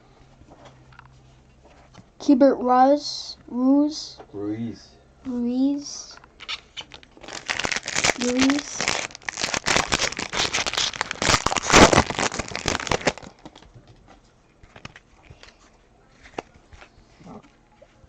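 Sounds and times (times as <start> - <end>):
cards clicking and rustling: 6.4 - 13.7
foil wrapper crinkling and tearing: 6.4 - 13.7.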